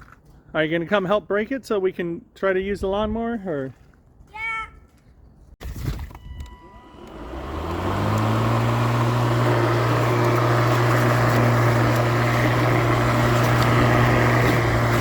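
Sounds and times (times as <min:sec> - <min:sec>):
lawn mower motor starting and running: 0:06.4 - 0:15.0.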